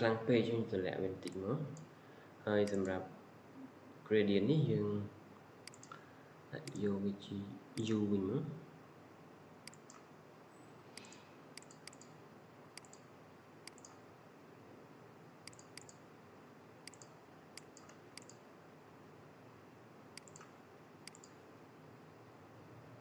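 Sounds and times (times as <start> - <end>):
computer mouse clicking: 5.6 - 6.0, 6.6 - 6.8, 9.6 - 10.1, 11.0 - 14.0, 15.4 - 16.0, 16.8 - 18.4, 20.2 - 21.4.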